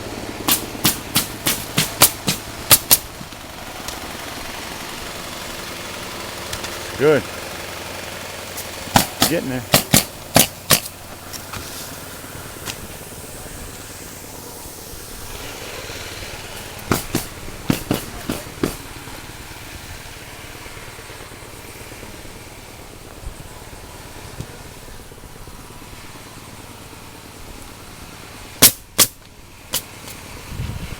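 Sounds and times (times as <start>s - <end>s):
steady motor hum: 0.0s - 30.9s
nail gun shots: 0.5s - 3.1s, 8.9s - 10.9s, 16.8s - 18.8s, 28.6s - 30.2s.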